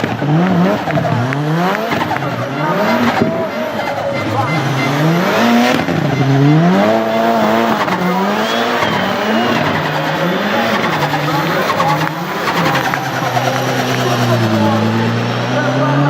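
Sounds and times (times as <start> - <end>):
car engine revving: 0.0 - 16.0
tyre squeal: 0.9 - 15.0.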